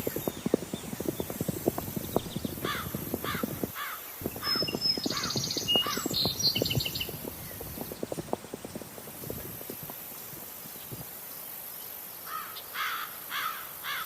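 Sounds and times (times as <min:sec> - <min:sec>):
bird cawing: 0:02.6 - 0:06.1, 0:12.2 - 0:14.0.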